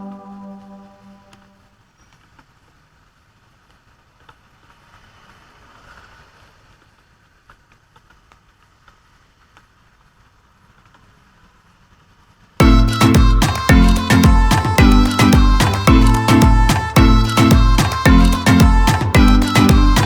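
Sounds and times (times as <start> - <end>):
loud music: 12.6 - 20.0.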